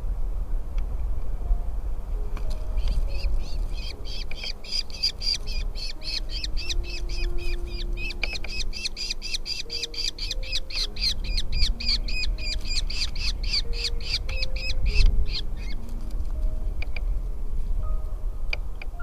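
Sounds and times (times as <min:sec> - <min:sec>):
nestling birds begging calls: 0:02.6 - 0:15.9.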